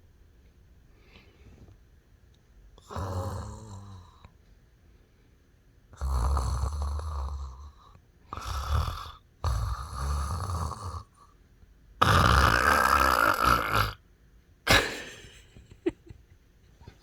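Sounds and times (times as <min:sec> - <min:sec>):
person snoring loudly: 0:02.8 - 0:04.2, 0:06.0 - 0:11.2, 0:12.0 - 0:14.0.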